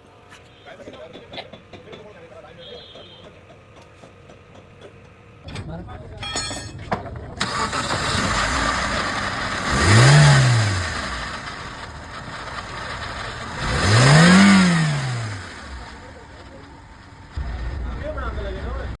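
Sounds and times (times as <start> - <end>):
misfiring car engine revving: 7.4 - 17.8.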